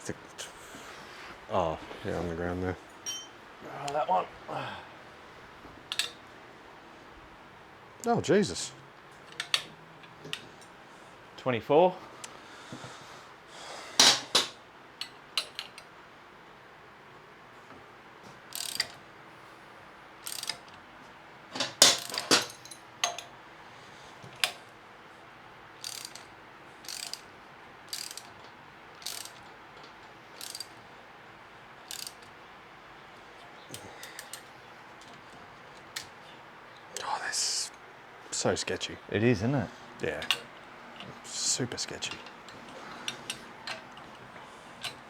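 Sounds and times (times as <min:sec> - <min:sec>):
ratchet wrench rasping: 0:18.5 - 0:19.0, 0:20.2 - 0:20.7, 0:25.8 - 0:27.3, 0:27.9 - 0:28.4, 0:29.0 - 0:29.5, 0:30.3 - 0:30.8, 0:31.8 - 0:32.2.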